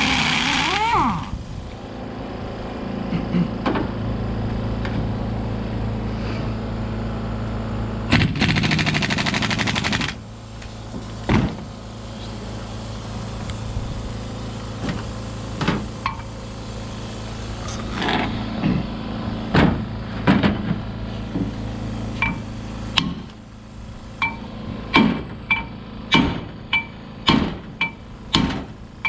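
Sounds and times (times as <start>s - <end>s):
low hum: 0.0s - 29.0s.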